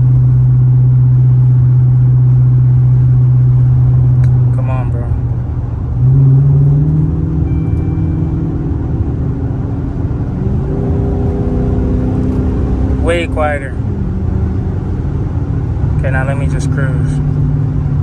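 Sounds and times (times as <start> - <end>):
car exhaust accelerating: 0.0 - 18.0
highway drone: 0.0 - 18.0.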